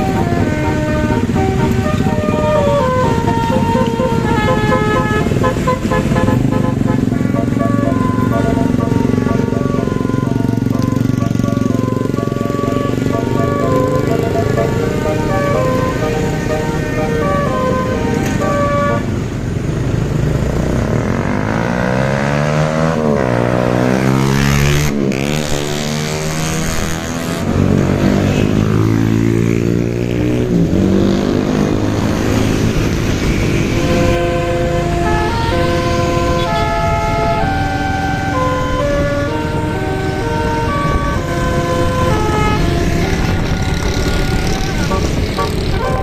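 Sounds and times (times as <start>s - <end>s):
musical bus horns playing: 0.0s - 19.4s, 31.5s - 46.0s.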